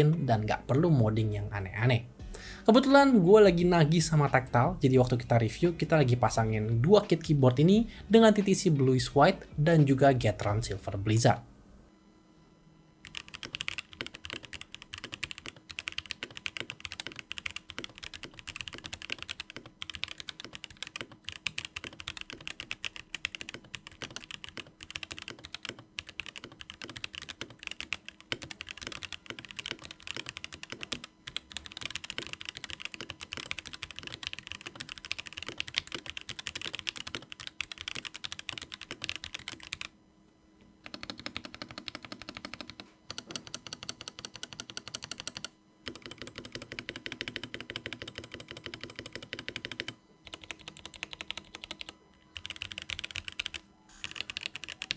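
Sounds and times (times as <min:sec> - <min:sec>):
fast typing on mechanical keyboard: 0:13.0 - 0:39.9, 0:40.8 - 0:54.9.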